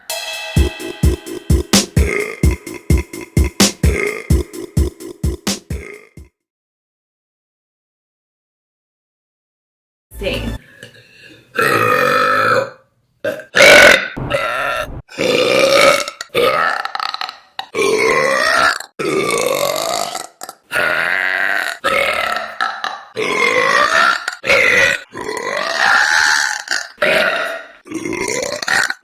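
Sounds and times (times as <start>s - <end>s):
woman burping loudly: 15.1s - 17.1s, 23.2s - 27.0s, 27.9s - 29.0s.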